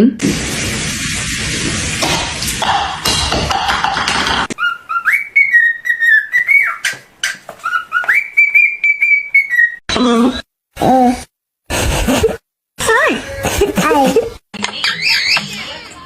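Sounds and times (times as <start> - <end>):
parrot whistling: 4.6 - 9.8.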